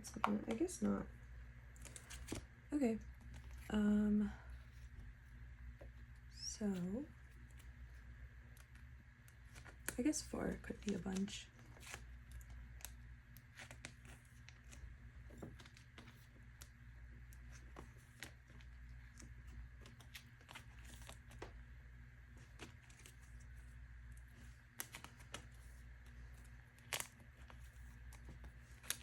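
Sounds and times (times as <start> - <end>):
plastic sleeves rustling and crinkling: 0.0 - 29.0
steady low hum: 0.0 - 29.0.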